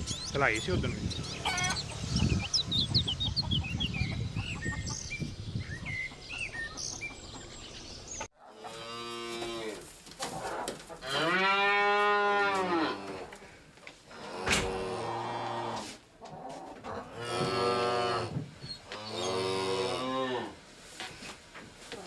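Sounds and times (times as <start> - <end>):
birds chirping: 0.0 - 8.3.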